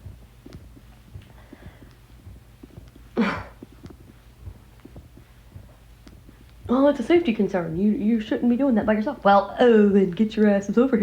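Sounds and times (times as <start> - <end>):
faint clicks: 0.0 - 6.7
low room hum: 0.0 - 11.0.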